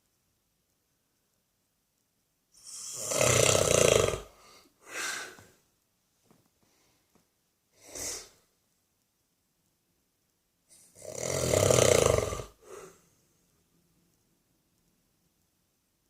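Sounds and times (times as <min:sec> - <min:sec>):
man snoring: 0:02.6 - 0:05.4, 0:10.9 - 0:13.0.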